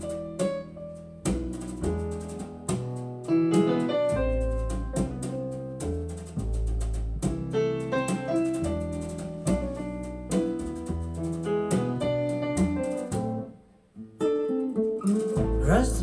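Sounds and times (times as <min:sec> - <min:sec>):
slow jazz piano: 0:00.0 - 0:16.0
deep bass notes: 0:15.4 - 0:16.0.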